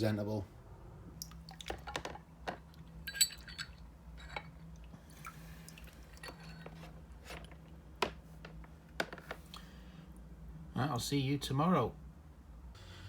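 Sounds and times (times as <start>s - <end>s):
liquid sounds: 1.2s - 7.6s
metal clinking against container: 3.0s - 4.7s, 6.1s - 6.8s.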